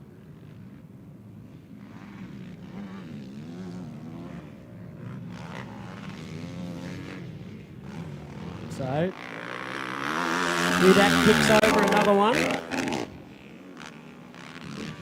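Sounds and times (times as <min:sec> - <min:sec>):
quad bike engines revving: 0:00.0 - 0:15.0.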